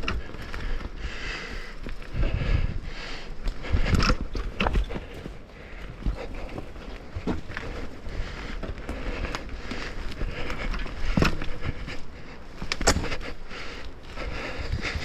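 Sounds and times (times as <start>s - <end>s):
bike rattling: 0.0s - 15.0s
tyres crunching over dirt and rocks: 3.3s - 15.0s
wheels knocking on rocks: 3.4s - 14.0s.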